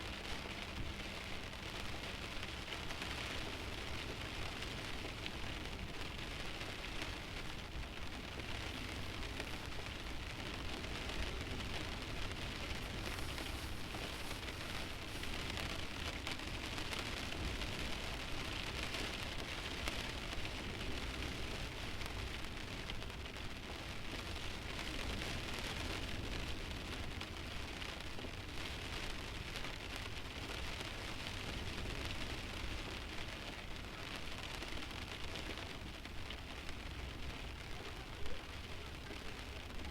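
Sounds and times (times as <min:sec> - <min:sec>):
light rain on car windshield: 0:00.0 - 0:39.9.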